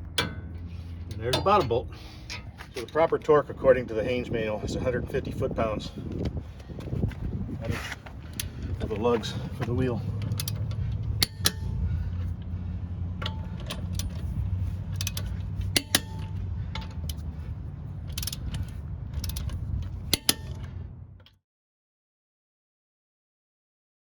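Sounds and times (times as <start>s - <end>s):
low hum: 0.0s - 21.3s
torque wrench clicking: 10.1s - 12.0s, 13.2s - 20.7s.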